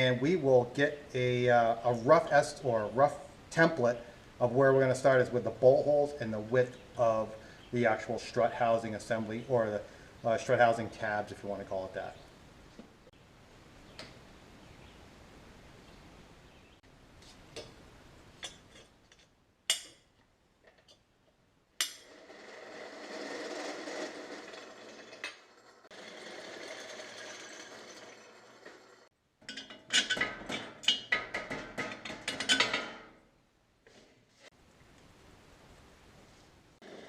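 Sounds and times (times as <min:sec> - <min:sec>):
metal clanks and knocks: 0:26.6 - 0:33.2.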